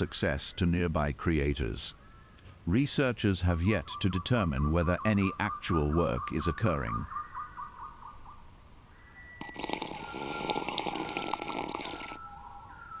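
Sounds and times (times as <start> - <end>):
running splashing water: 9.4 - 12.2
water drips and clicks: 9.4 - 12.2.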